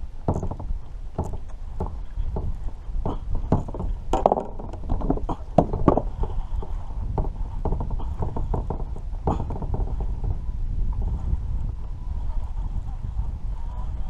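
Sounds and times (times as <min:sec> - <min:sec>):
wind rumble on microphone: 0:00.0 - 0:14.0
knocks and taps on kayak: 0:00.3 - 0:10.1.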